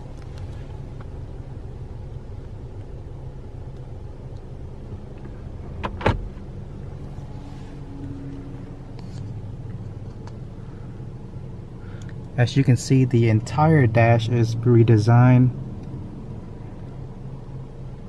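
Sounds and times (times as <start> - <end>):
car cabin hum: 0.0 - 18.0.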